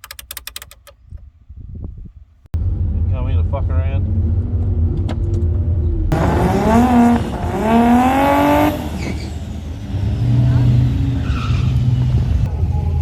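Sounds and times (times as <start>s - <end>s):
drag car engine revving: 6.1s - 12.4s.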